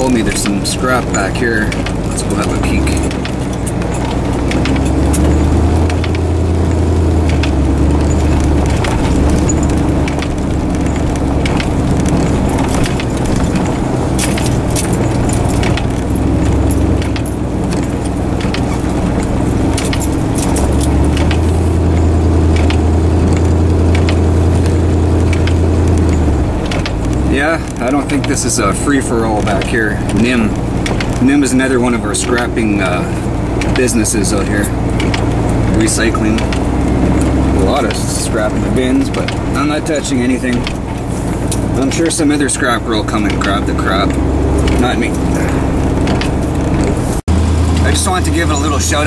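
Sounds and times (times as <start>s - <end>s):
loose items rattling and jingling: 0.0s - 49.0s
vehicle engine and road drone: 0.0s - 49.0s.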